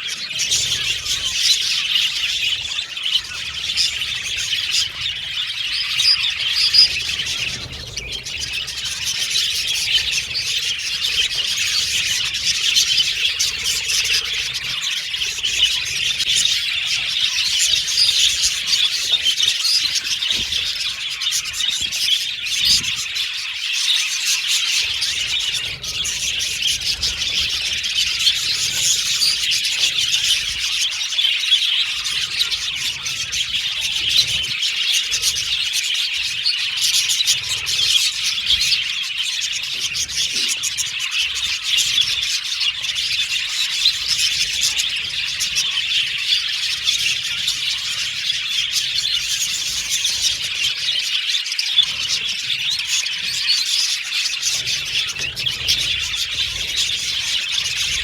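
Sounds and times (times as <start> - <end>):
flock of budgerigars chirping: 0.0 - 58.0.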